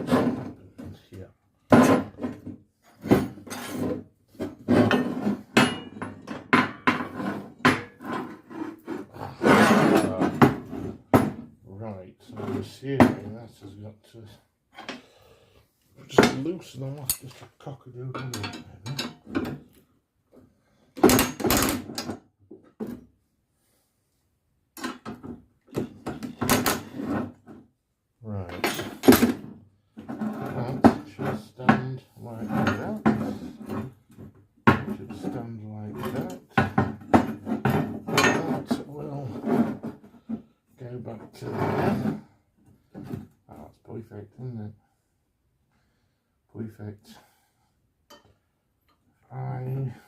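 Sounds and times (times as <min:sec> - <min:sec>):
hand tools clanking on metal: 0:01.7 - 0:08.5, 0:16.0 - 0:19.6, 0:28.5 - 0:29.4, 0:30.1 - 0:34.0, 0:34.7 - 0:39.4.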